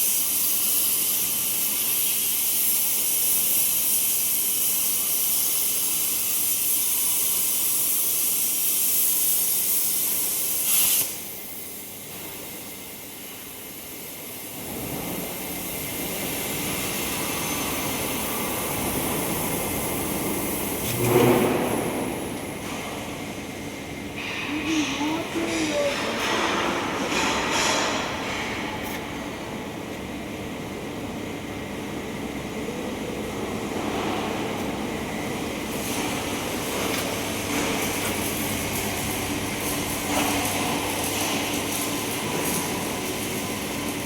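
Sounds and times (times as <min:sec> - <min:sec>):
cutting torch hissing: 0:00.0 - 0:11.9, 0:12.5 - 0:22.5.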